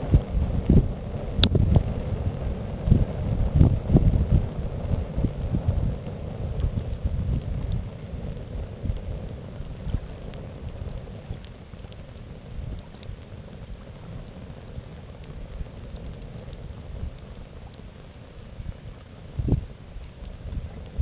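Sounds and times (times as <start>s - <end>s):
campfire crackling: 0.0s - 21.0s
low rumble: 0.0s - 21.0s.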